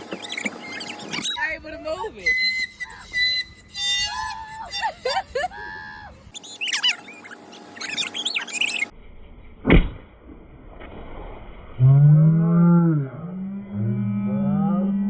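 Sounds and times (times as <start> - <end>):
high chirping whistles: 0.0 - 8.9
thump: 9.6 - 10.1.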